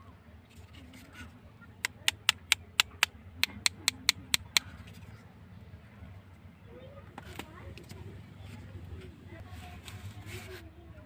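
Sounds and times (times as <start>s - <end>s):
sharp clicks: 1.8s - 4.7s.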